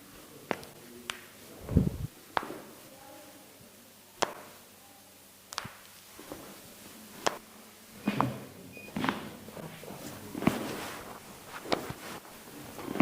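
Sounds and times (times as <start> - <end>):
sharp clicks and snaps: 5.5 - 6.0.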